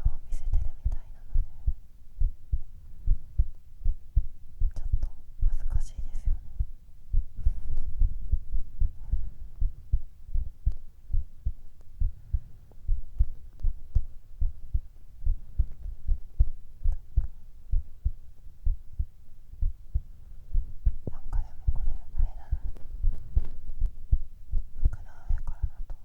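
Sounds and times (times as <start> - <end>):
heartbeat thumps: 0.0 - 26.0.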